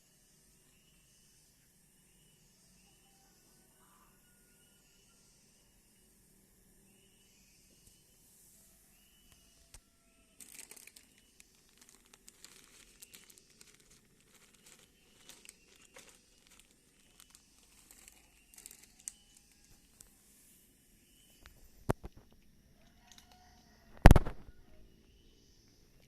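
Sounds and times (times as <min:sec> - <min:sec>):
cat eating crinkling and clicking: 0:10.4 - 0:19.8, 0:21.9 - 0:24.3.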